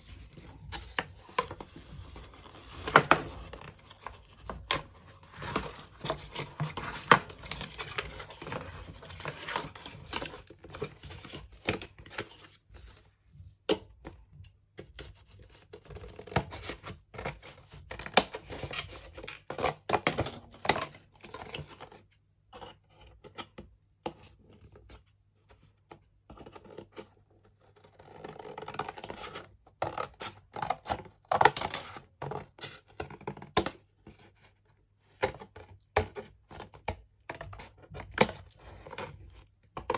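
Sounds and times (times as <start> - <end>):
paper and cardboard rustling: 0.0 - 12.9.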